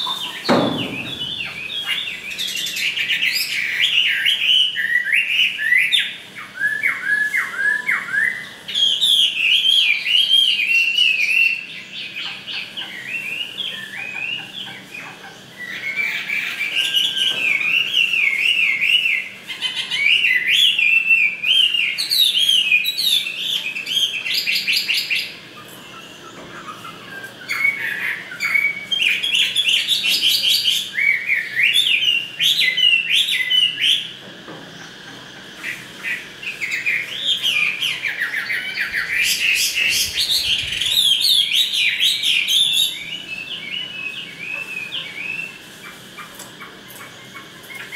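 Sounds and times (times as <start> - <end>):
bird singing whistled phrases: 0.0 - 11.8, 15.6 - 25.4, 26.8 - 34.2, 36.5 - 45.6.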